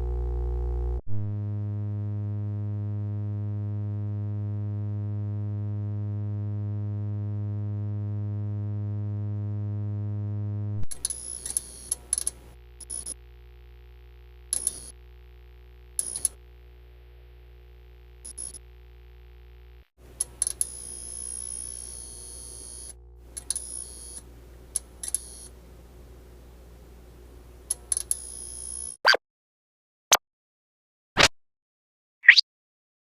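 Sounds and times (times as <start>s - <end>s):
low electric buzz: 0.0s - 4.6s, 5.4s - 26.2s
low hum: 0.0s - 19.9s.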